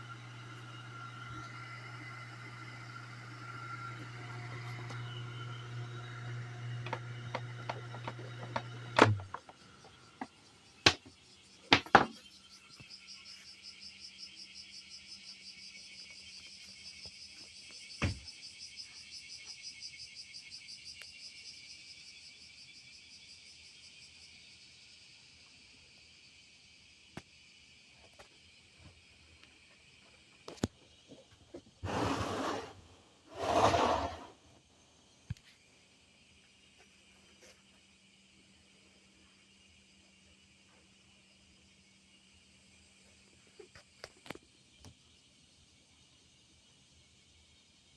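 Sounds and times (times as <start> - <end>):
pump motor humming: 0.0 - 11.0, 31.8 - 34.3
insects chirring: 7.0 - 31.0.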